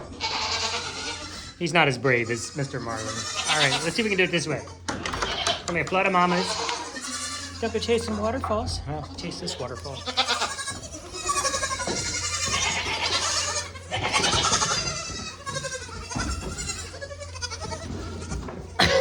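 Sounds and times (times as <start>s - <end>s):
goats bleating: 0.0s - 19.0s.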